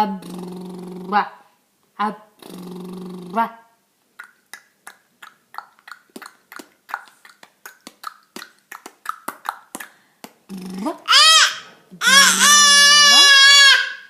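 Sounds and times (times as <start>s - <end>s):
person making mouth clicks: 0.0s - 1.2s, 2.4s - 3.4s, 4.2s - 11.1s.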